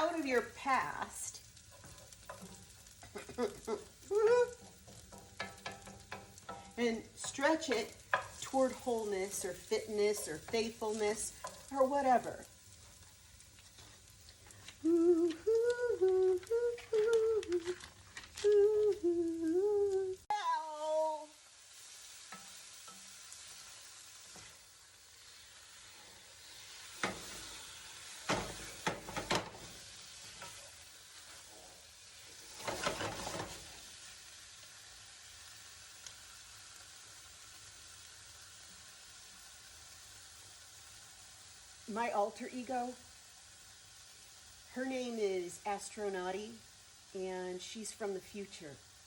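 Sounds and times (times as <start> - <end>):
garlic and onion sizzling in a pan: 0.0 - 49.0
stirring clatter: 1.6 - 3.6, 4.5 - 9.5
woman humming: 3.2 - 4.6, 14.8 - 17.8, 18.4 - 21.3.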